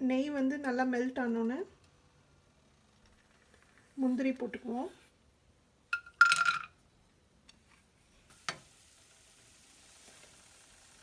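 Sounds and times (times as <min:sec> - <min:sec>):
cashews sizzling in ghee: 0:07.8 - 0:11.0.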